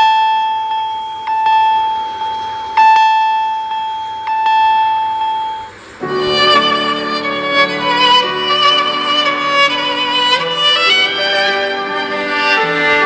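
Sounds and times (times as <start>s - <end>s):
bell-like chime ringtone: 0.0s - 5.8s
ringtone music: 0.0s - 13.0s.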